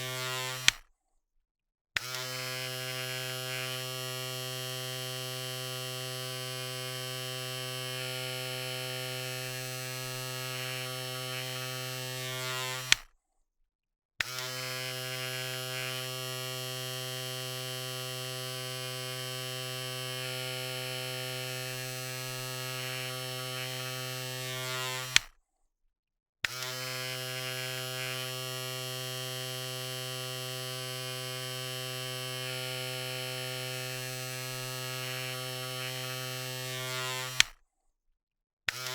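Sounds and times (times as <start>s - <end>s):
electric razor buzzing: 0.0s - 0.8s, 2.0s - 13.0s, 14.2s - 25.3s, 26.5s - 37.6s
razor switch click: 37.2s - 37.6s.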